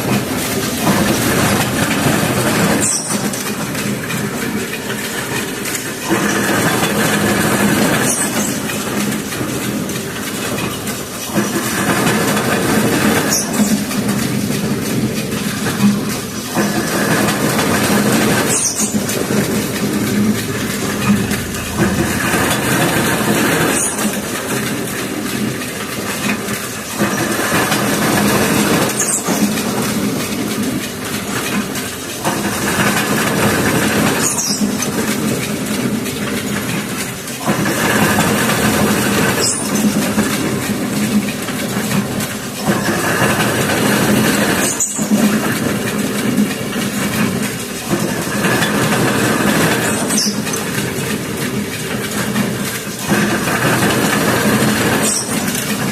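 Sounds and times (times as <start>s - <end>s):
planing machine running: 0.0s - 55.9s
sharp machine knock: 5.0s - 30.5s.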